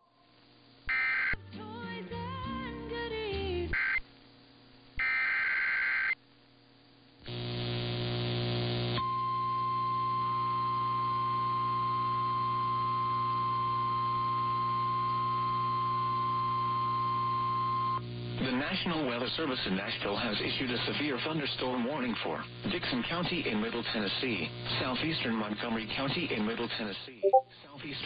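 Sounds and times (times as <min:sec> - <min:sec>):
screeching digital data tones: 0:00.9 - 0:01.4
steady alert tone: 0:27.2 - 0:27.5.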